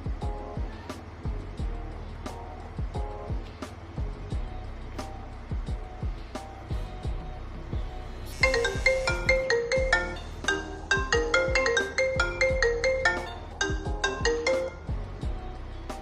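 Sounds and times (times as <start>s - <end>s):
background music with thudding beat: 0.0s - 16.0s
marimba phone ringtone: 8.4s - 15.0s.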